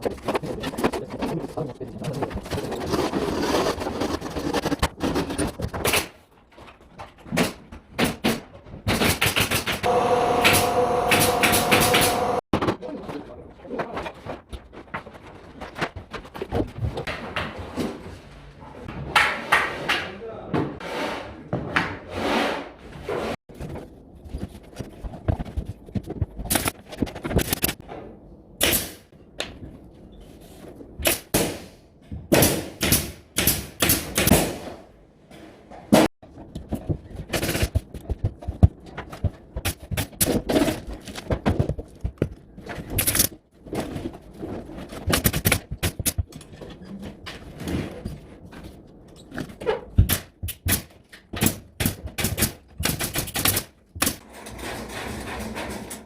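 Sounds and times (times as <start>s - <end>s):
pneumatic nail gun shots: 8.9s - 12.4s.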